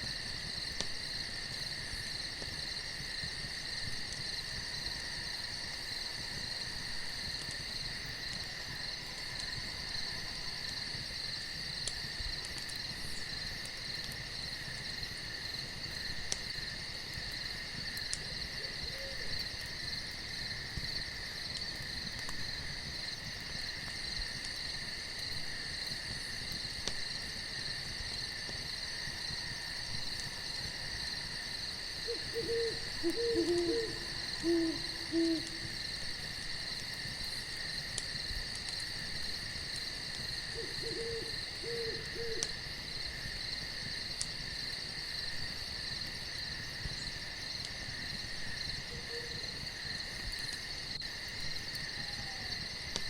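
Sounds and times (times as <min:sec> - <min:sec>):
crickets chirring: 0:00.0 - 0:53.0
owl hooting: 0:18.6 - 0:19.3, 0:32.0 - 0:35.7, 0:40.5 - 0:42.5, 0:48.9 - 0:49.4, 0:52.0 - 0:52.5.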